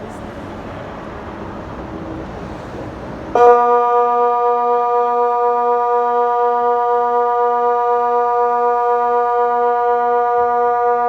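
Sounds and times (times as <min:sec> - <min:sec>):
electronic siren steady tone: 0:03.3 - 0:11.0.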